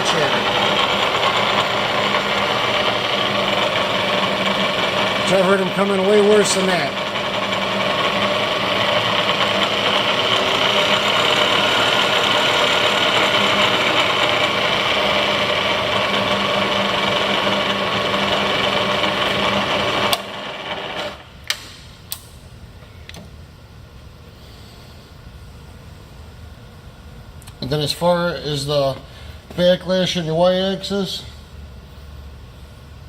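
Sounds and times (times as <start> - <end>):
milling machine running: 0.0 - 21.3.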